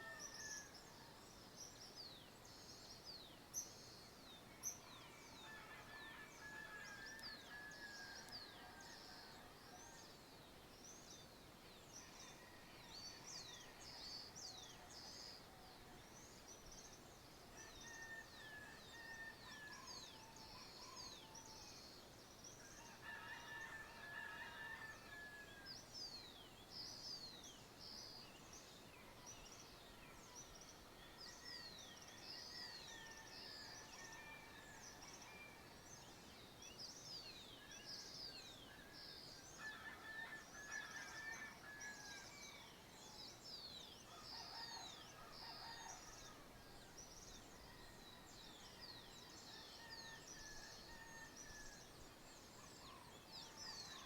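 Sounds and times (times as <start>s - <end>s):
distant rooster crowing: 5.2s - 9.5s.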